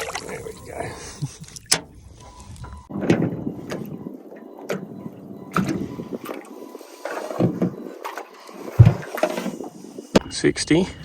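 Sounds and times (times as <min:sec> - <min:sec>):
water splashing: 0:00.0 - 0:10.2.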